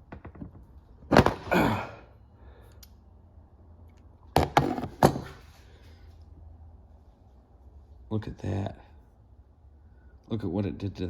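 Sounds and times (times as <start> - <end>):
breathy exclamation: 1.4 - 2.1.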